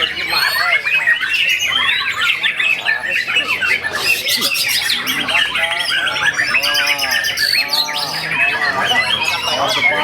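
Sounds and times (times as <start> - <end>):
other songbirds singing: 0.0 - 10.0
songbird singing chirps and trills: 0.0 - 10.0.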